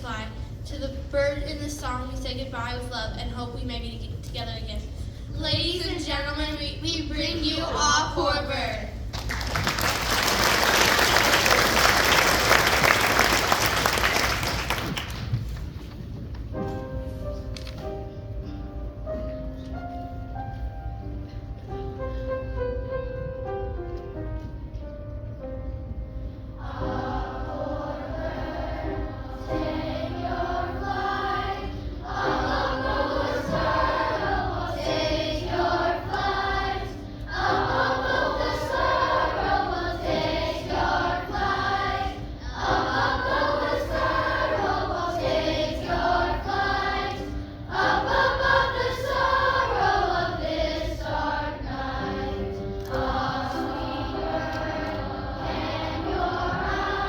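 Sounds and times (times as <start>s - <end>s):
choir singing: 26.6s - 57.0s.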